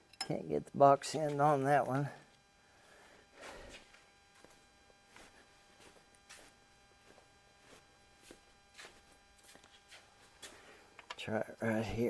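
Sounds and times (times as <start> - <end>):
faint hum: 0.0 - 12.0.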